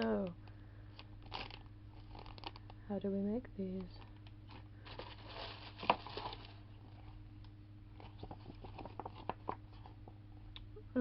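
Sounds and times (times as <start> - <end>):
packaging crinkling: 1.0 - 2.8, 4.0 - 6.6, 7.9 - 10.1.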